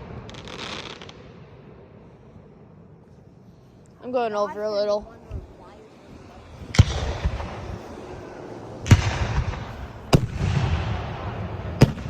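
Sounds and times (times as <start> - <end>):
fireworks bangs: 0.0 - 2.0, 5.1 - 12.0
low rumbling echo: 4.9 - 12.0.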